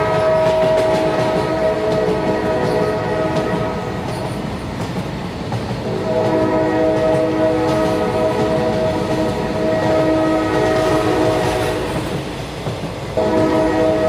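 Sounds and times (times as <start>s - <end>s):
train horn chord: 0.0s - 4.1s, 5.8s - 12.0s, 13.2s - 14.0s.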